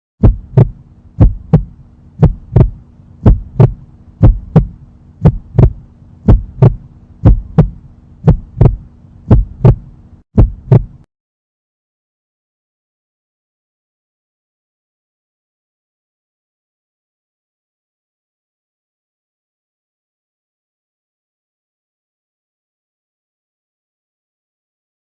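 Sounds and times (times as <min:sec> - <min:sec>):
heartbeat thumps: 0:00.2 - 0:11.0
faint steady hum: 0:00.2 - 0:11.1.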